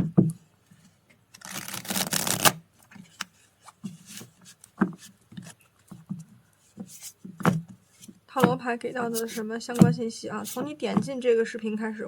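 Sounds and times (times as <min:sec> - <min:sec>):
cards being shuffled: 0:01.4 - 0:02.6, 0:09.1 - 0:09.4
cards tapping and flicking: 0:01.4 - 0:02.6.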